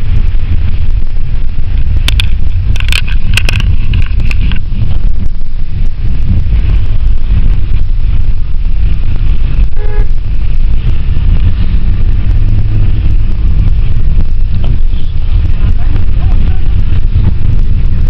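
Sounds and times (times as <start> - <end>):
van engine and road rumble: 0.0 - 18.0
car horn beep: 9.7 - 10.2.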